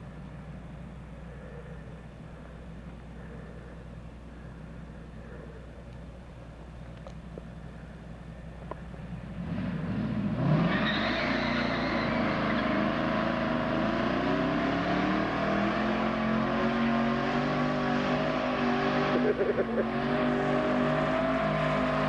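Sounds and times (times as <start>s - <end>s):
car engine revving: 9.2s - 22.0s
tyres squealing: 10.5s - 13.8s.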